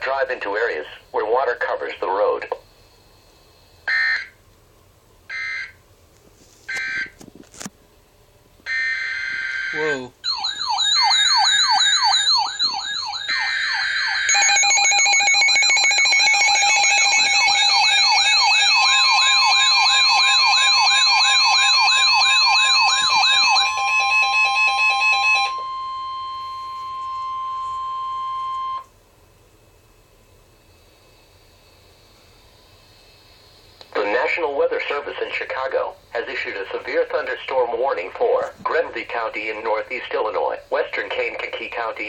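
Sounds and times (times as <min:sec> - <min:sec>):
steady alarm tone: 0:00.0 - 0:04.4, 0:05.3 - 0:05.8, 0:06.7 - 0:07.2, 0:08.7 - 0:28.9, 0:30.0 - 0:42.0
warbling alarm sirens: 0:02.7 - 0:04.4, 0:05.3 - 0:05.8, 0:06.7 - 0:07.2, 0:08.7 - 0:28.9.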